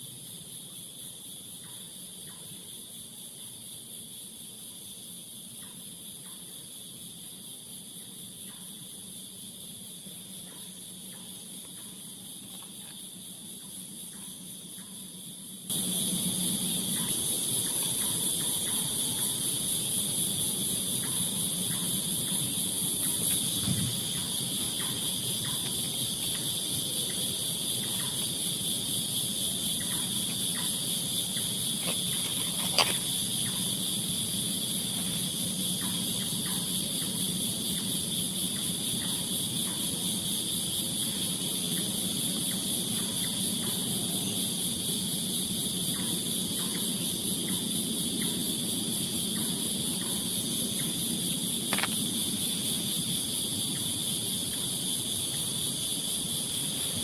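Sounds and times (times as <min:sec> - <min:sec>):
crickets chirping: 0:00.0 - 0:57.0
sharp click: 0:51.7 - 0:52.0.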